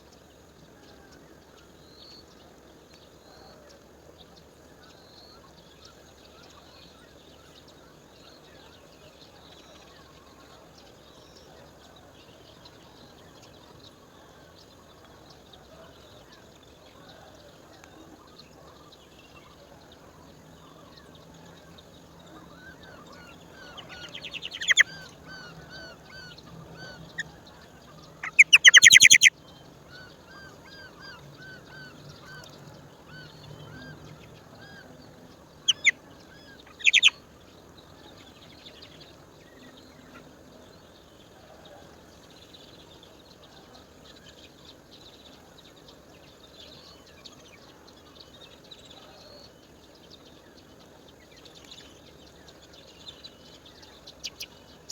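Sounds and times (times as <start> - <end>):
small birds chirping: 18.8 - 54.9
bird rattling calls: 24.1 - 24.9, 28.2 - 29.3, 36.7 - 37.1.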